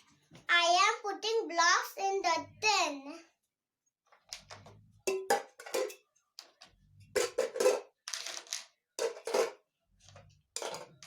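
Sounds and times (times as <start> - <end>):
toy blocks clattering into metal tin: 7.1 - 9.7, 10.6 - 11.0.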